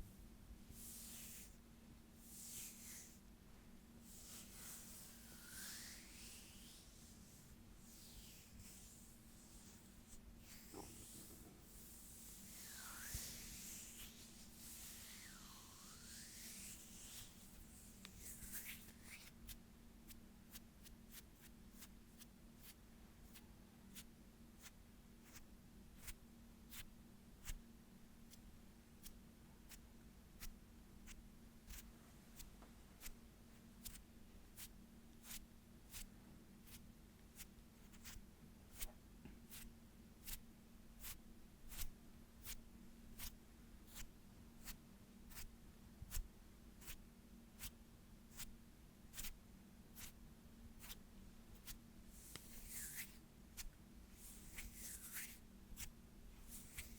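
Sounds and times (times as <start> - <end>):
hands rubbing softly: 0.6 - 20.6, 50.8 - 56.9.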